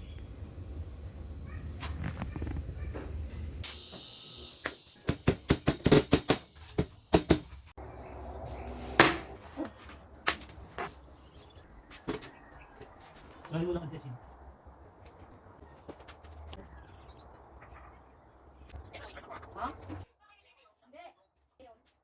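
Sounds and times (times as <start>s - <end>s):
sharp knocks: 8.9s - 9.4s.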